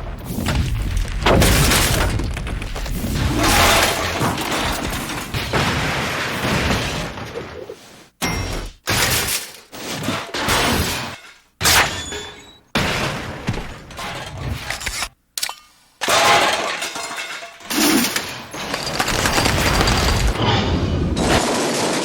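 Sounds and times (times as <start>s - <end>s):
metal-on-metal crashes: 16.0s - 22.0s.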